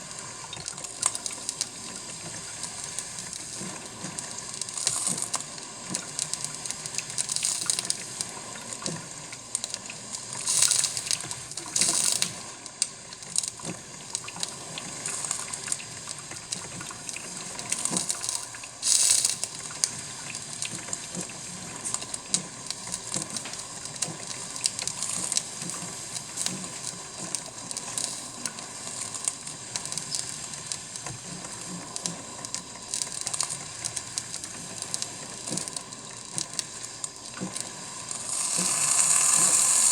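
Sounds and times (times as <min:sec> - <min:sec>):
coffee maker water gurgling: 0:00.0 - 0:39.9
hissing spurts: 0:38.0 - 0:39.9.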